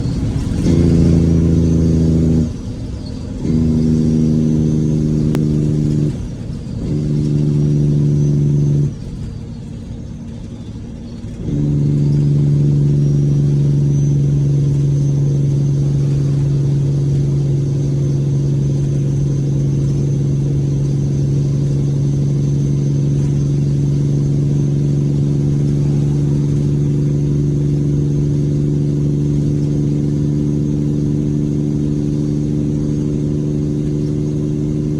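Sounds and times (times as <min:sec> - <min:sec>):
truck engine brake: 0:00.0 - 0:34.9.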